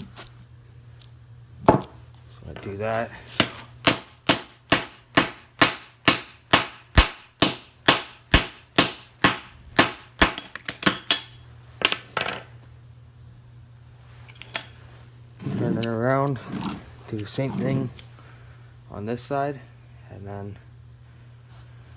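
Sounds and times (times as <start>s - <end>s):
hammer striking steel: 3.4s - 12.1s.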